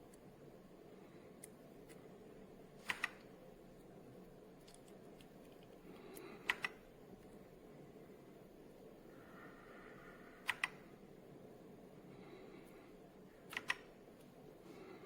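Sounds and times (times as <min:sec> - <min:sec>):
mechanical keyboard clicks: 0:02.8 - 0:03.3, 0:06.4 - 0:06.8, 0:10.4 - 0:10.8, 0:13.5 - 0:13.9.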